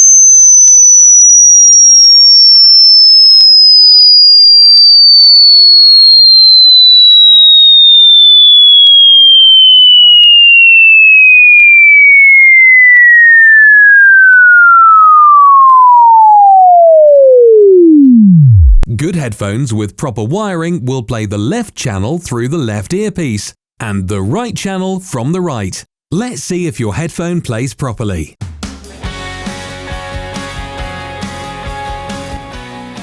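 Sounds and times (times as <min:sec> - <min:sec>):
sine tone sweeping downward: 0:00.0 - 0:18.9.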